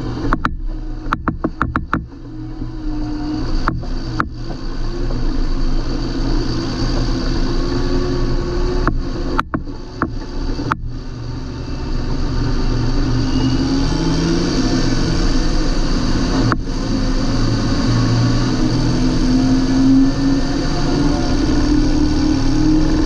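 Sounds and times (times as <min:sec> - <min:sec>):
tractor diesel engine running: 0:00.0 - 0:13.2.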